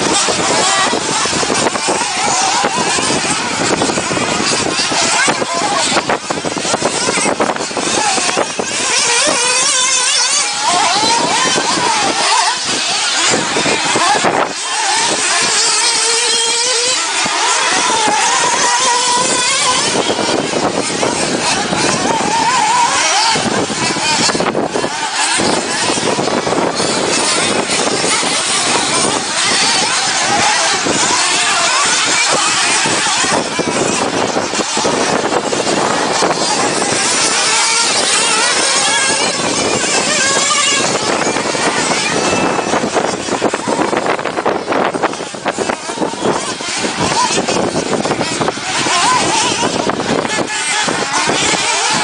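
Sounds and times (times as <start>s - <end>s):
steady rough noise: 0.0s - 52.0s
steady rushing noise: 0.0s - 52.0s
small electric motors whining: 6.8s - 24.4s, 25.2s - 42.3s.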